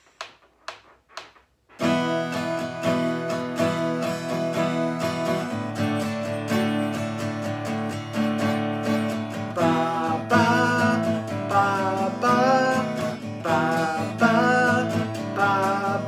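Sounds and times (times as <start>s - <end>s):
strummed acoustic guitar: 1.7s - 16.0s.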